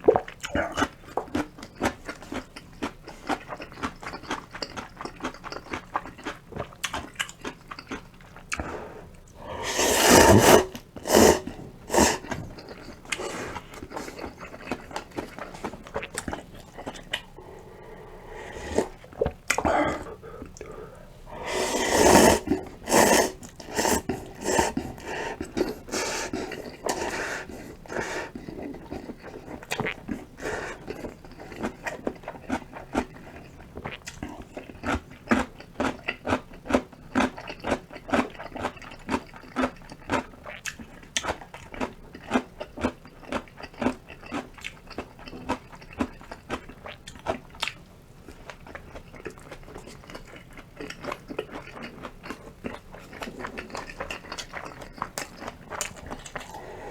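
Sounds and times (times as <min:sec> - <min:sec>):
person chewing: 0:00.0 - 0:56.9
noisy mouthfuls of noodles: 0:08.5 - 0:15.0, 0:16.0 - 0:31.6, 0:55.4 - 0:56.9.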